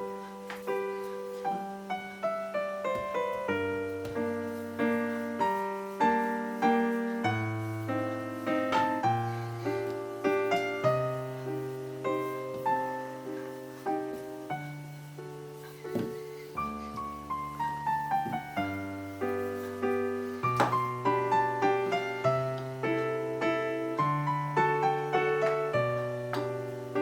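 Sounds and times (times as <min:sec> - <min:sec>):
solo piano tune: 0:00.0 - 0:27.0.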